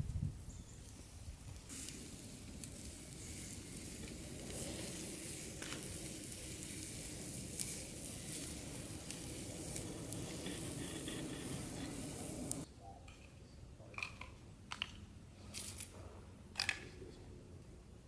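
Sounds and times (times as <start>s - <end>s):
burning wood popping and crackling: 0.8s - 12.7s
sausages sizzling: 1.7s - 12.7s.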